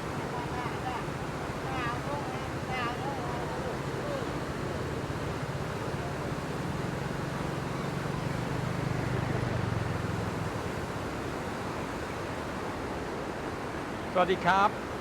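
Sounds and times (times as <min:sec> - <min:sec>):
river rushing through a weir: 0:00.0 - 0:15.0
low engine hum: 0:01.3 - 0:12.4.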